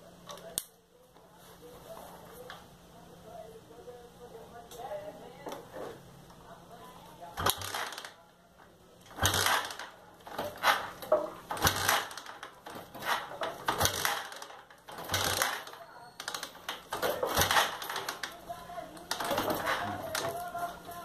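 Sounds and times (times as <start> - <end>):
engine being kick-started: 7.4 - 8.1, 9.1 - 20.6.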